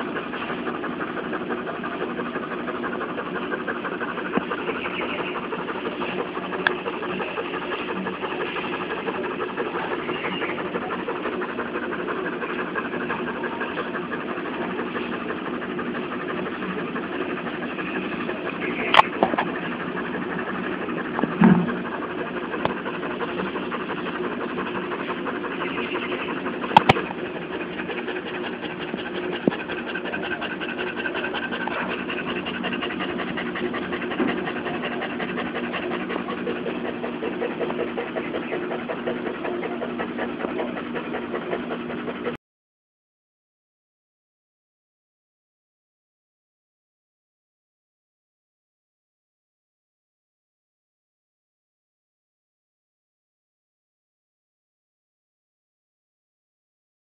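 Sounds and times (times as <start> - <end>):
dog panting hard: 0.0 - 42.4.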